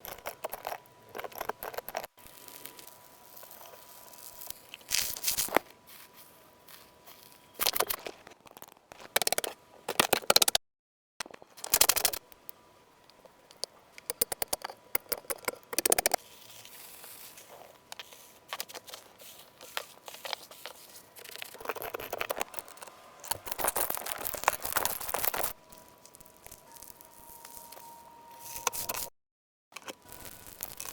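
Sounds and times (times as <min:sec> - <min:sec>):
slime crackling and popping: 0:00.0 - 0:05.6, 0:21.2 - 0:27.7, 0:29.9 - 0:30.9.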